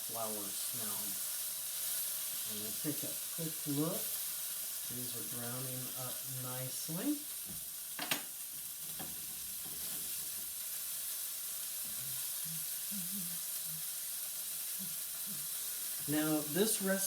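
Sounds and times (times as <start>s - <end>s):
chicken sizzling in a pan: 0.0s - 17.0s.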